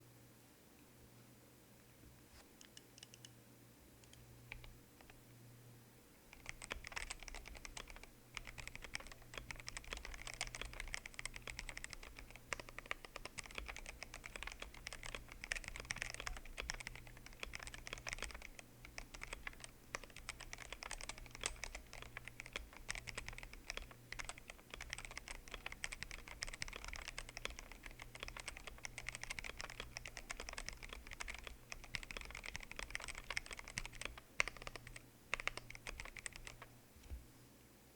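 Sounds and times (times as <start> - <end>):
fast typing on mechanical keyboard: 6.3 - 36.7.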